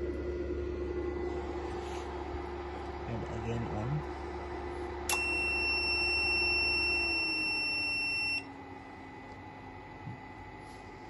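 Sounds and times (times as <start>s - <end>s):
low electrical hum: 0.0s - 11.0s
long high electronic beep: 5.1s - 8.5s.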